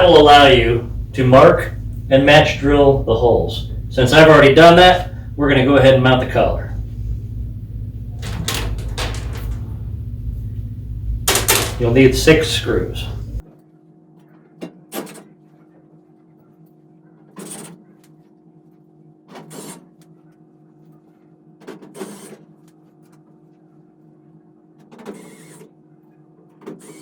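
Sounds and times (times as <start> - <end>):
machinery hum: 0.0 - 13.4.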